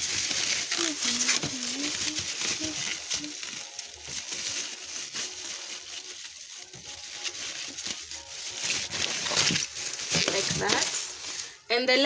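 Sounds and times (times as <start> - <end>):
plastic wrapping crinkling: 0.0 - 12.0.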